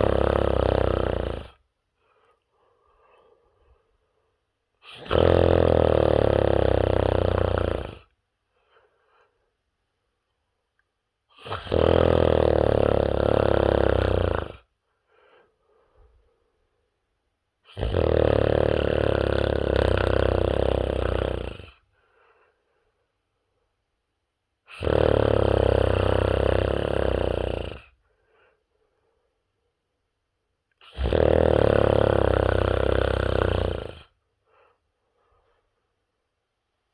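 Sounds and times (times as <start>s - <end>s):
person snoring: 0.0s - 1.6s, 4.8s - 8.1s, 11.3s - 14.7s, 17.7s - 21.8s, 24.7s - 28.0s, 30.8s - 34.2s
faint breath: 1.5s - 4.8s, 8.4s - 9.8s, 14.7s - 17.0s, 21.8s - 23.8s, 27.8s - 29.8s, 34.0s - 36.2s.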